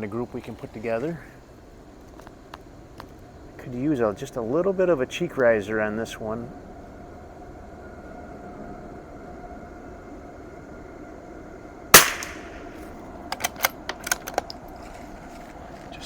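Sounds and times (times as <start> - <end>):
rifle bolt metallic clicks: 12.0 - 12.6, 13.3 - 14.6
rifle shot with echo: 12.0 - 12.8.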